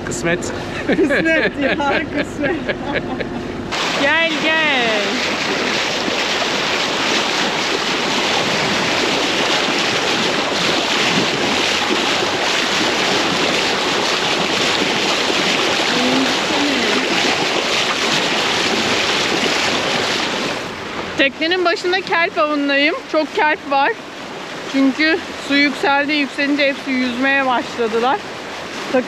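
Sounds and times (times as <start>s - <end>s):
sea waves rushing: 0.0s - 29.0s
wind on microphone: 3.8s - 21.3s.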